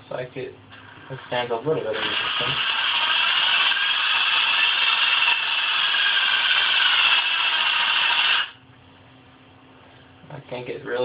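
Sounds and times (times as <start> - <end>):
cordless drill motor running: 2.0 - 8.6.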